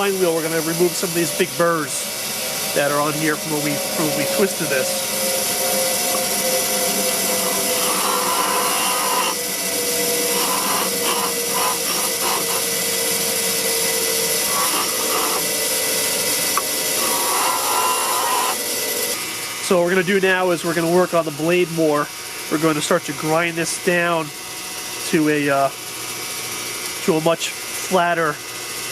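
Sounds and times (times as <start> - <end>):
metal grinding on wheel: 0.0 - 19.2
electric grinder whining: 0.0 - 28.9.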